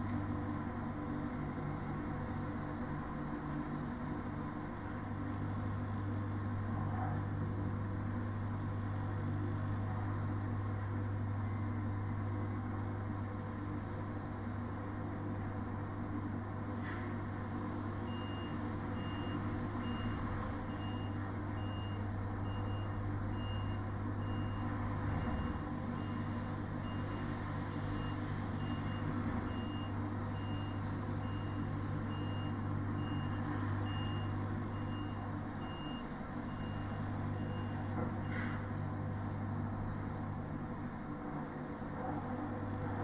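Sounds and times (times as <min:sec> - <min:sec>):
refrigeration unit running: 0:00.0 - 0:43.0
diesel engine humming: 0:15.5 - 0:41.9
reversing alarm beeping: 0:18.1 - 0:38.5.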